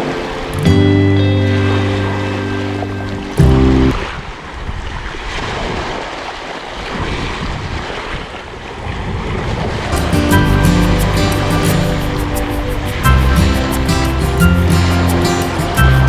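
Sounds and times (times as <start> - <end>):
music: 0.0 - 3.9, 10.0 - 16.0
sea waves washing on shore: 0.0 - 16.0
wind noise on microphone: 6.8 - 16.0.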